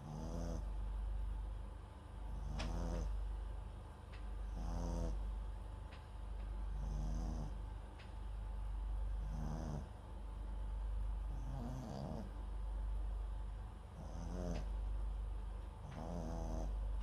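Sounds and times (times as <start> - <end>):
dog snoring: 0.0 - 0.8, 2.3 - 3.3, 4.4 - 5.4, 6.6 - 7.7, 9.1 - 10.1, 11.2 - 12.5, 13.8 - 15.0, 15.7 - 17.0
dog breathing: 2.3 - 3.2, 4.4 - 5.3, 6.7 - 7.7, 9.2 - 10.1, 11.2 - 12.5, 13.8 - 14.8, 15.7 - 17.0.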